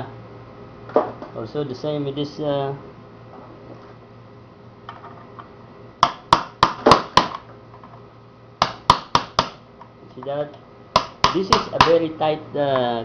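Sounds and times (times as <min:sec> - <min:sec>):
hammer striking metal: 0:11.0 - 0:12.0.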